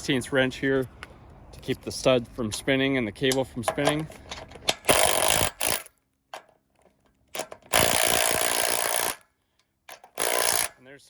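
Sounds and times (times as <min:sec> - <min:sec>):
ratchet wrench clicking: 0:07.4 - 0:09.2, 0:09.9 - 0:10.8.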